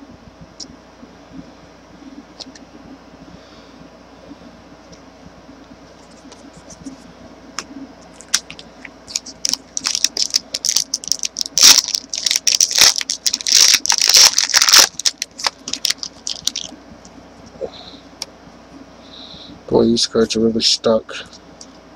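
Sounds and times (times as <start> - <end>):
cards being handled: 8.1 - 16.7
foil pack tearing and crinkling: 8.2 - 16.7.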